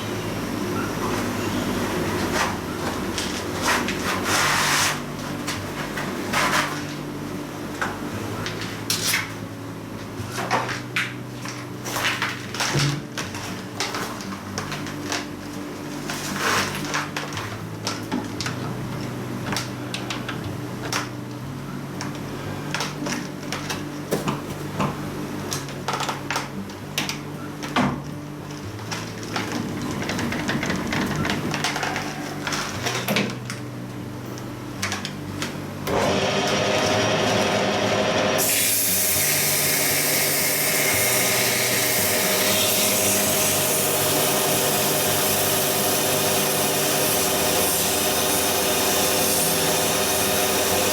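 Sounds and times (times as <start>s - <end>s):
metal lathe humming: 35.9s - 50.9s.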